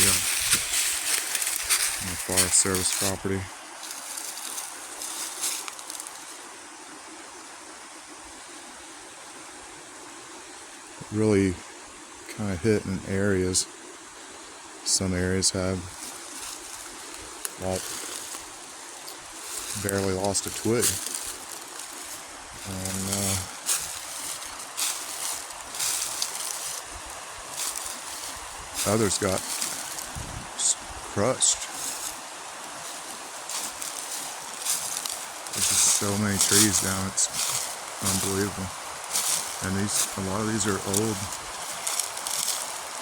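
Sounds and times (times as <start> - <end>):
footsteps crunching dry leaves: 0.0 - 6.5, 15.9 - 43.0
creek rushing: 0.0 - 43.0
outdoor hiss: 0.0 - 43.0.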